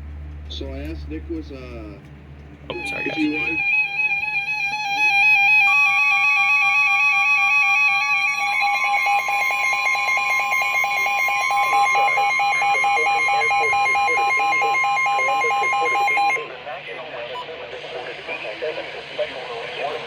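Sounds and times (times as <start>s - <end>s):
two-pitch electronic beeping: 2.7s - 16.4s
steady electronic warning tone: 2.7s - 20.0s.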